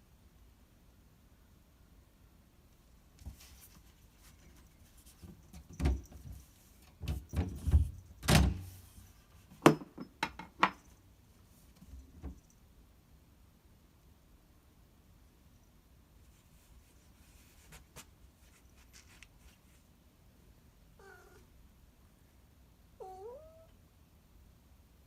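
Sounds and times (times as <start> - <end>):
cat pawing door thumps and rattles: 5.4 - 8.7.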